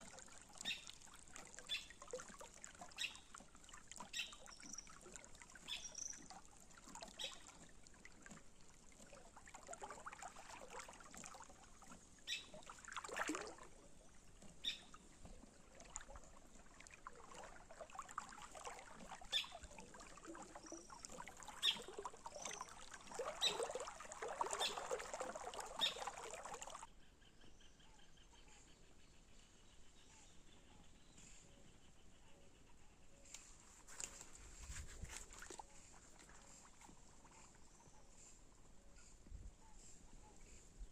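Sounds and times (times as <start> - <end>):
water trickling and lapping: 0.0 - 26.9, 32.6 - 40.9.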